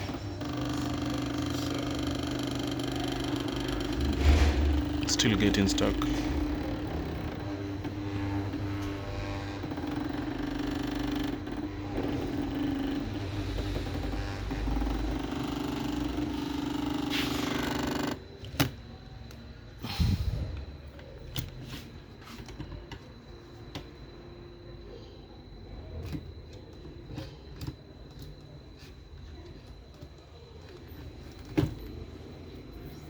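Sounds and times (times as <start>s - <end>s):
stepper motor humming: 0.0s - 18.7s.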